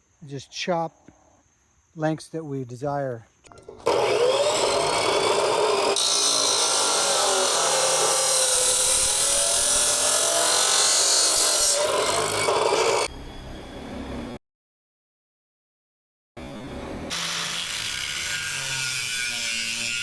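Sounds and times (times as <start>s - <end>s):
saw cutting metal: 3.5s - 13.1s, 16.4s - 20.0s
saw motor whine: 3.5s - 14.4s.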